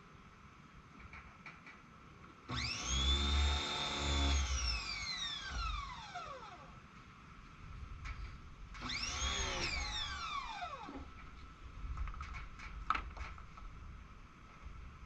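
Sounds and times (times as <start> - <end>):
pressure washer motor whining: 8.8 - 11.0.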